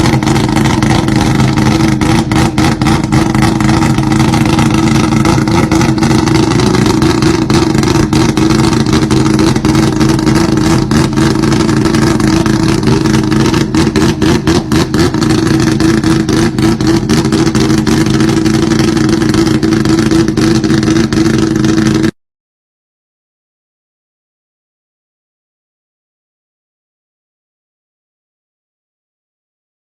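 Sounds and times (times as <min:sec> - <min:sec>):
rotary engine and exhaust running: 0:00.0 - 0:22.2.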